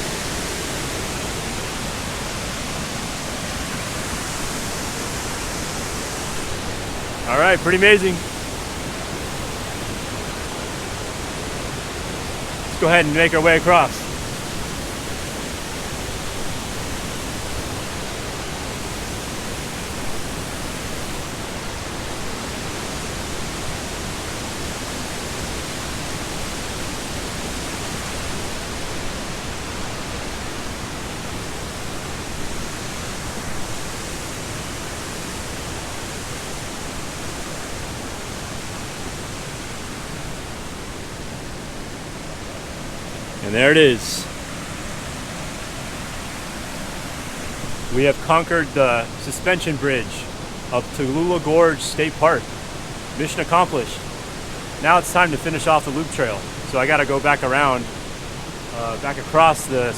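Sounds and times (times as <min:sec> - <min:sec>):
whitewater rushing over rocks: 0:00.0 - 0:59.9.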